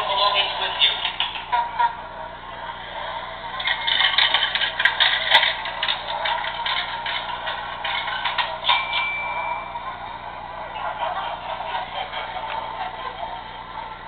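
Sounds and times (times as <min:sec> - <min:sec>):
model streetcar clicking on track: 0:03.6 - 0:09.5
high ringing tone: 0:08.5 - 0:11.0.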